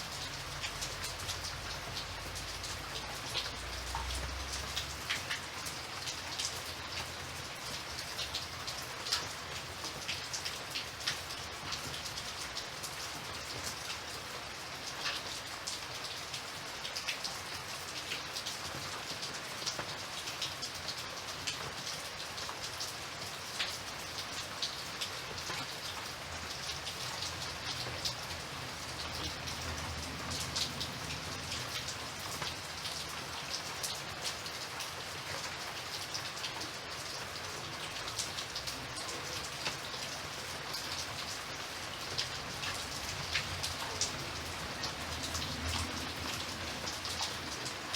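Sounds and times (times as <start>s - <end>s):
steady rain hiss: 0.0s - 47.9s
drips and patters: 23.2s - 47.9s.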